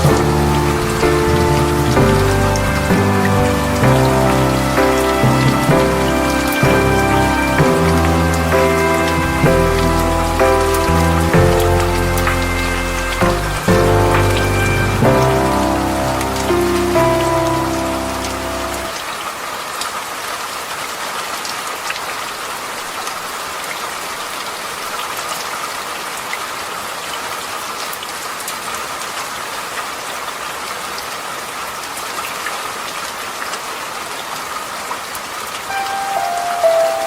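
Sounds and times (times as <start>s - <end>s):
soft music notes: 0.0s - 19.0s, 35.7s - 37.0s
steady rain falling: 0.0s - 37.0s.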